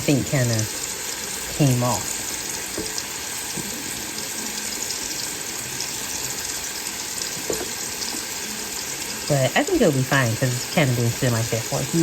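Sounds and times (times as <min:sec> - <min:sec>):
meat searing with steady sizzle: 0:00.0 - 0:12.0.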